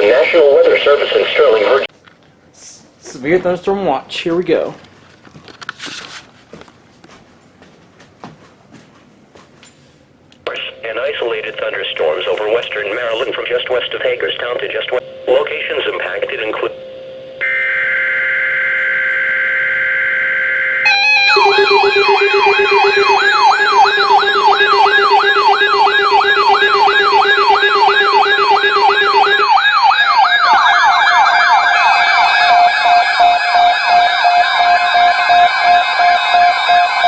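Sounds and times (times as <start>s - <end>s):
sweeping siren-like alert tone: 17.4s - 37.0s
high two-note alert tone: 20.8s - 29.6s.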